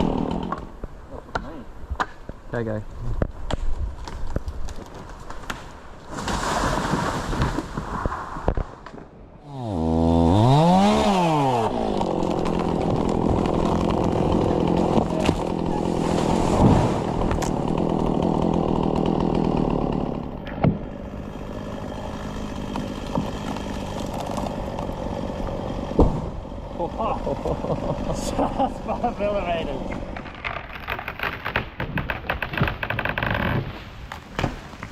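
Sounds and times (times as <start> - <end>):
chainsaw revving: 0.0 - 0.7, 9.4 - 30.3.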